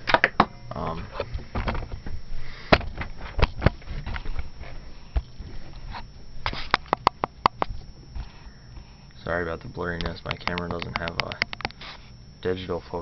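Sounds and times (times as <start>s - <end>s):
rubbing against microphone: 3.2s - 6.9s, 11.6s - 12.2s
sharp clicks and knocks: 10.0s - 11.8s.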